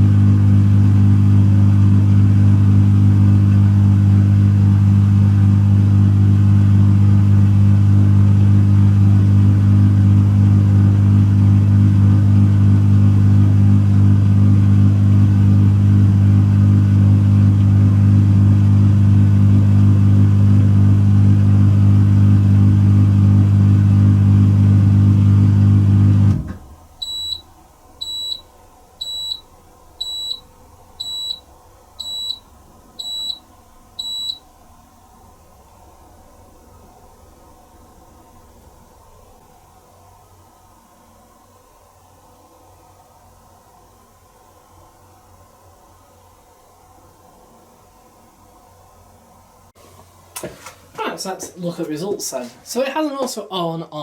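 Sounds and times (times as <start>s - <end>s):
dishwasher pump humming: 0.0s - 39.3s
short high-pitched beeps: 27.0s - 27.4s, 28.0s - 30.4s, 31.0s - 32.4s, 33.0s - 33.4s, 34.0s - 34.4s.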